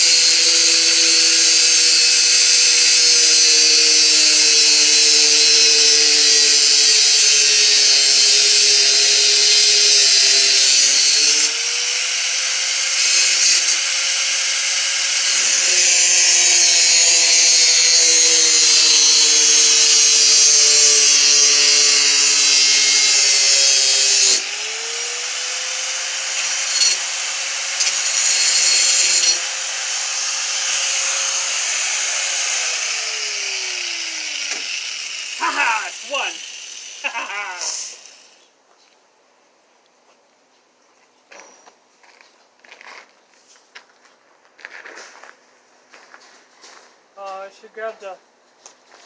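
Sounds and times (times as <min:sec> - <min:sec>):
angle grinder motor whine: 0:00.0 - 0:38.4
grinder hissing cut: 0:00.0 - 0:38.4.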